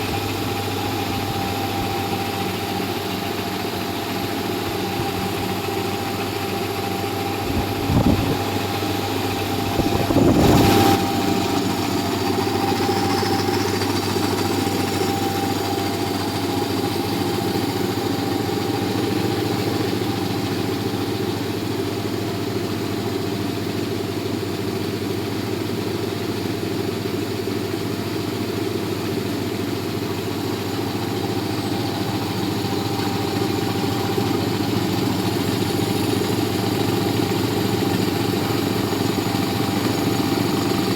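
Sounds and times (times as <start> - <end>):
air compressor running: 0.0 - 40.9.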